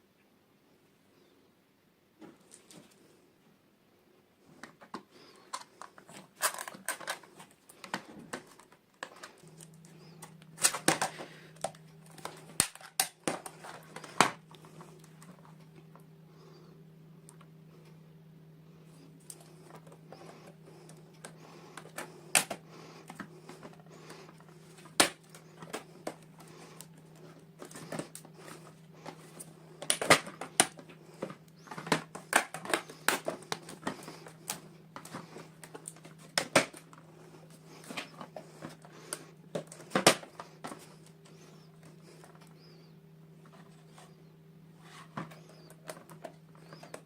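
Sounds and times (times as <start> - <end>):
steady low hum: 0.0 - 47.0
plastic packaging clicks and taps: 29.8 - 36.8.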